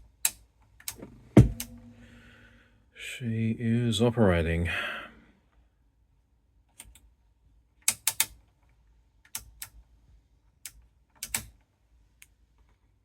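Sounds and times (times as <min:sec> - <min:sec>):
faint low hum: 0:01.0 - 0:04.2
sharp mechanical clicks: 0:07.8 - 0:08.4.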